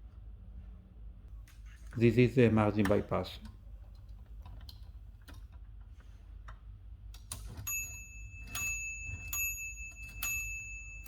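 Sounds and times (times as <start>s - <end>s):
typewriter carriage bell ringing: 7.5s - 11.0s.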